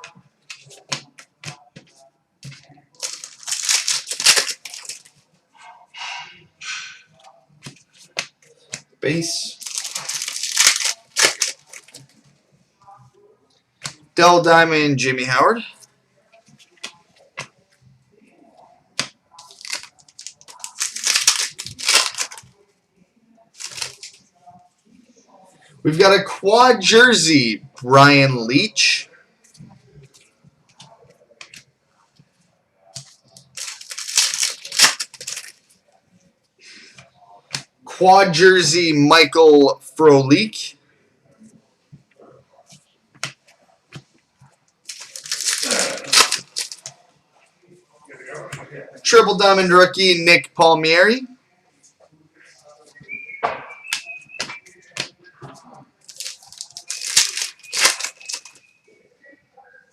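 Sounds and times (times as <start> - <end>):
cards and plastic sleeves rustling: 0.0 - 5.2, 7.6 - 12.3, 19.0 - 22.6, 23.5 - 24.3, 25.9 - 31.7, 33.0 - 35.7, 44.8 - 47.0, 49.1 - 51.2, 53.8 - 58.8
wrapper tearing and crinkling: 2.5 - 5.1, 9.5 - 12.1, 19.0 - 22.6, 23.6 - 24.2, 33.0 - 35.6, 44.9 - 47.0, 56.0 - 58.7
faint high whistled tone: 52.7 - 55.8, 57.6 - 59.9.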